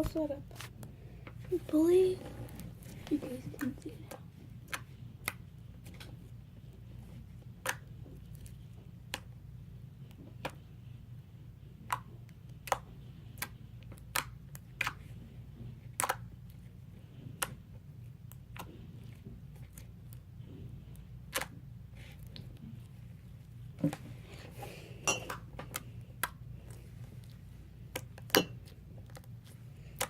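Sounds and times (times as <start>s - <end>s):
slime clicking and popping: 7.6s - 8.5s, 11.8s - 15.1s, 15.9s - 16.3s, 21.2s - 21.6s.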